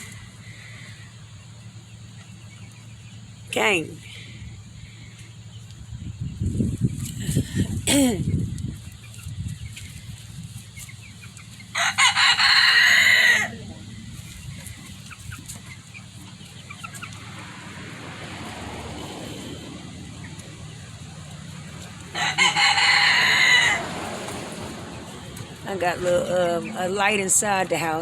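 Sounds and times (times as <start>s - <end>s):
rooster crowing: 11.7s - 13.7s, 22.1s - 24.4s.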